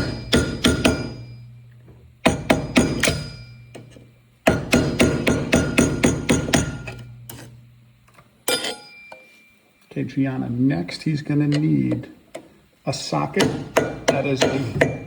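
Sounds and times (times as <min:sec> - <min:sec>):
hammer tapping on metal: 0:00.0 - 0:01.4, 0:02.2 - 0:07.4, 0:13.4 - 0:15.0.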